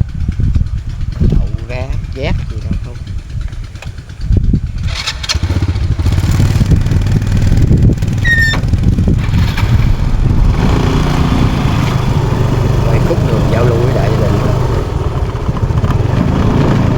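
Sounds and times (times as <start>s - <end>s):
motorcycle engine running: 0.0s - 16.9s
brief high squeak: 8.2s - 8.7s.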